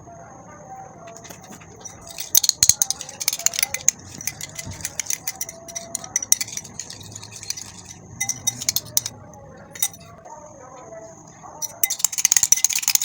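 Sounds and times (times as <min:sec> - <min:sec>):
spoon clicking against bowl: 0:01.2 - 0:09.1, 0:09.8 - 0:10.1, 0:11.6 - 0:13.0.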